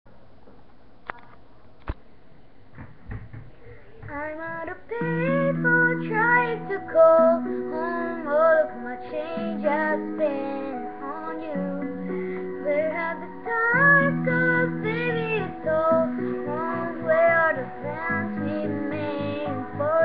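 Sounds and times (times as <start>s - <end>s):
woman singing pop melody: 4.0s - 20.0s.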